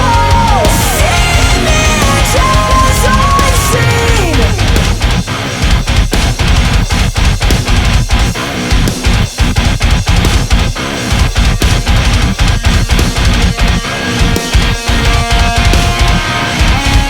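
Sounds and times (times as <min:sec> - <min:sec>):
heavy rock music: 0:00.0 - 0:17.0.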